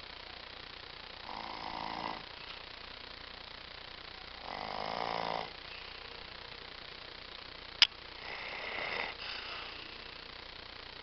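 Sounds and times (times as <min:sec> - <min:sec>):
dog snoring: 0:01.2 - 0:02.4, 0:04.4 - 0:05.6, 0:08.2 - 0:10.0.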